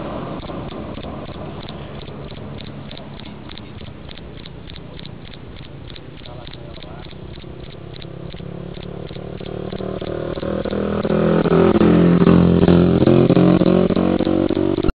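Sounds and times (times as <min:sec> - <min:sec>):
vehicle engine: 0:00.0 - 0:14.9
cricket chirping: 0:00.4 - 0:11.2.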